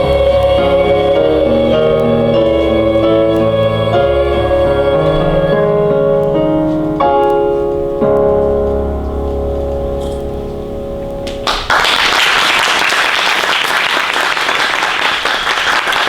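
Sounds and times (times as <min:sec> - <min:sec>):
keyboard chords: 0:00.0 - 0:11.8.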